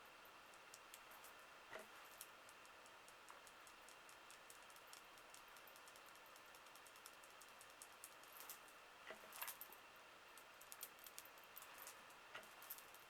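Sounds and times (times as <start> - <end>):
small clicks and taps: 0.4 - 9.7.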